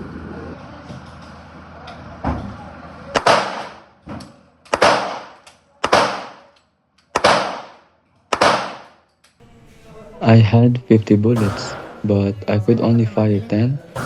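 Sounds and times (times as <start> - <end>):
gunshots with short echo: 4.7 - 6.5, 7.2 - 9.0, 11.4 - 12.3.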